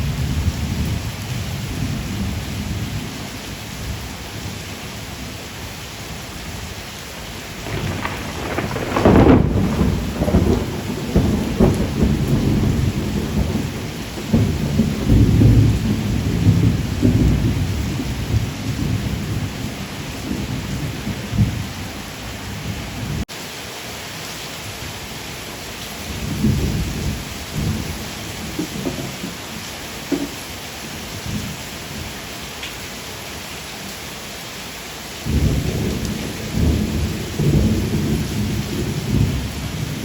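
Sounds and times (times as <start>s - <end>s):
rain hiss: 0.0s - 40.0s
thunder rumbling: 7.5s - 23.2s, 26.1s - 32.0s, 35.3s - 40.0s.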